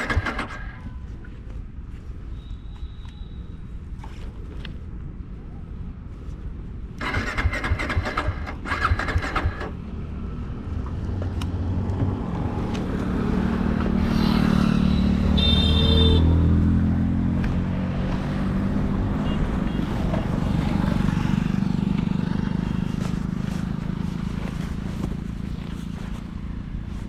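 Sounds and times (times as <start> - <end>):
motorcycle electric starter cranking: 0.0 - 0.7, 7.0 - 9.8
motorcycle engine running: 20.5 - 26.9.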